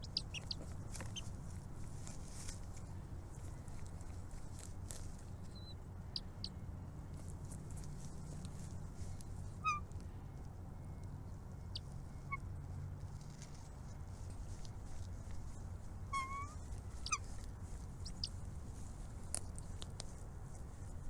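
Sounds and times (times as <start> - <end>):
bird calls: 0.0 - 1.4, 9.1 - 9.9, 16.1 - 18.4
steady low hum: 0.0 - 21.0.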